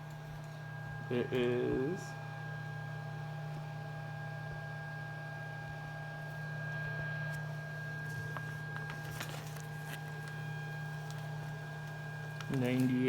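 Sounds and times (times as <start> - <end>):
printer fans humming: 0.0 - 13.0.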